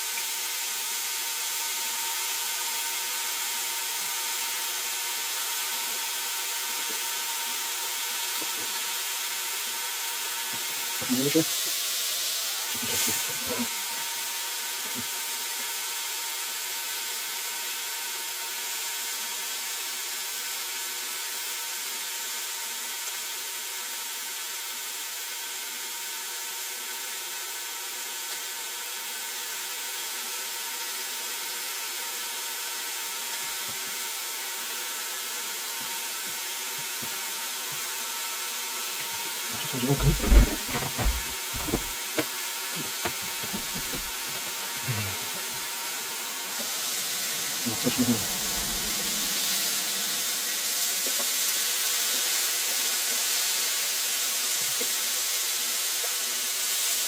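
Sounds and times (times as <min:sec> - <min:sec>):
food frying in hot oil: 0:00.0 - 0:57.0
clattering knocks: 0:39.9 - 0:44.5.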